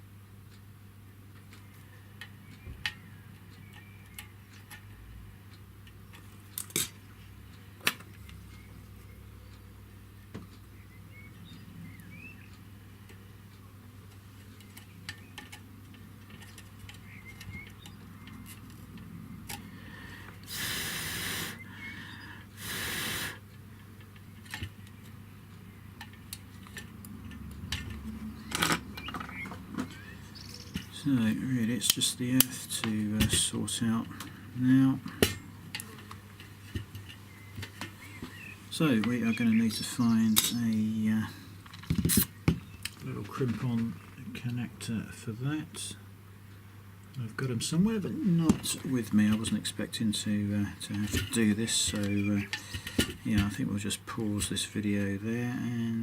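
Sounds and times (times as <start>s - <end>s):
steady low hum: 0.0s - 56.0s
hand tools clicking and tapping: 14.1s - 19.7s, 26.0s - 30.0s
hissing bursts: 20.5s - 23.4s.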